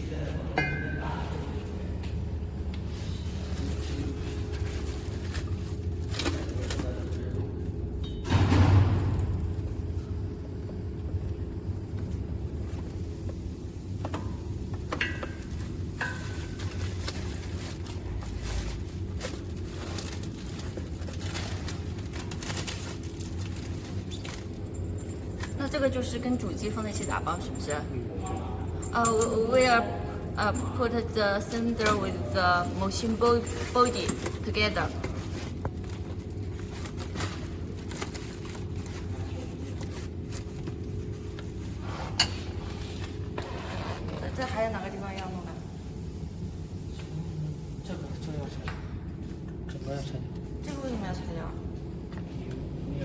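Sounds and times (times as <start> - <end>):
low machinery hum: 0.0 - 53.0.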